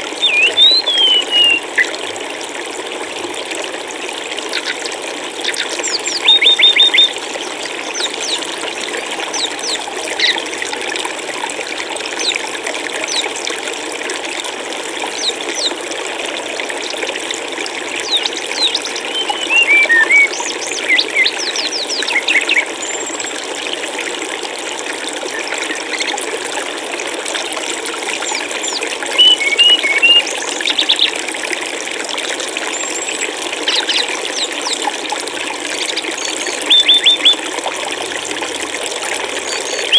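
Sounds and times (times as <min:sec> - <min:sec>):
flowing water: 0:00.0 - 0:39.9
small birds chirping: 0:00.2 - 0:01.9, 0:15.2 - 0:15.8, 0:18.0 - 0:23.0, 0:28.3 - 0:31.2, 0:32.7 - 0:34.9, 0:35.7 - 0:37.4.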